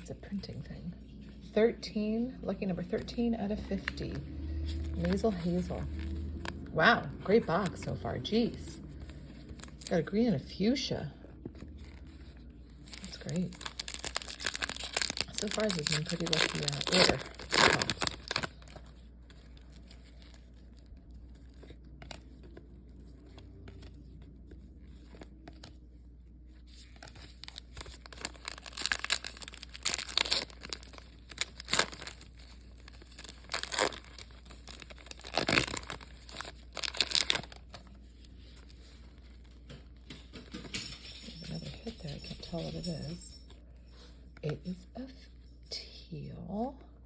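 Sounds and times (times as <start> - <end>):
wrappers crinkling and tearing: 3.0 - 10.2, 11.3 - 40.1.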